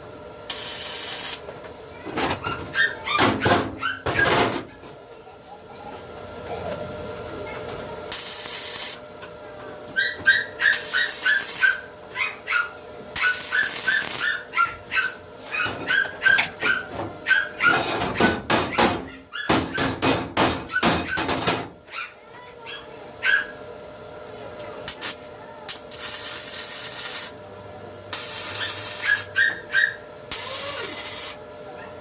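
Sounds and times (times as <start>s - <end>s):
small dog yapping: 2.4s - 4.3s, 9.9s - 19.8s, 21.9s - 23.6s, 28.4s - 32.0s.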